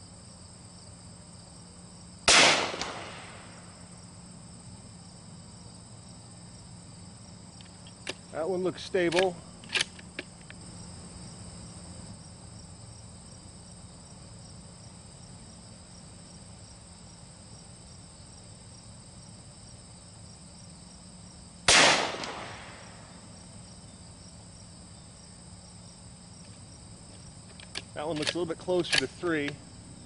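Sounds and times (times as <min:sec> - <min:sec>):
insects chirping: 0:00.0 - 0:30.0
rifle shot with echo: 0:02.3 - 0:03.6, 0:21.7 - 0:23.1.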